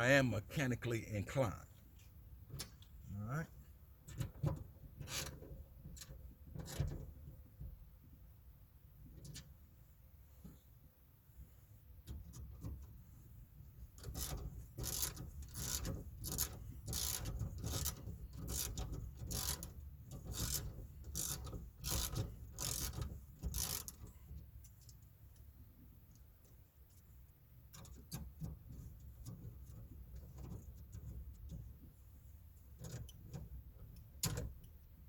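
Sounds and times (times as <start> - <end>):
ratchet wrench clicking rasps: 14.0 - 25.0.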